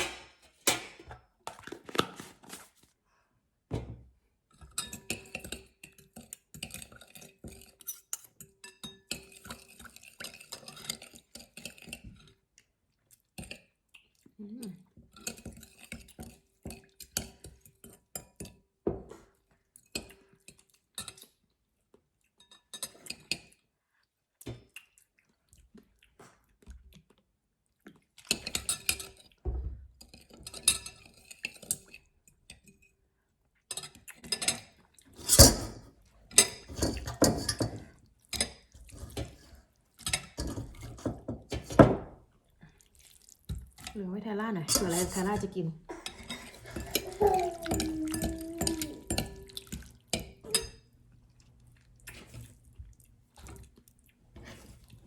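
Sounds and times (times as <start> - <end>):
spoon clinking and scraping bowl: 4.7 - 12.3, 33.7 - 39.4, 40.0 - 41.8, 44.6 - 50.9.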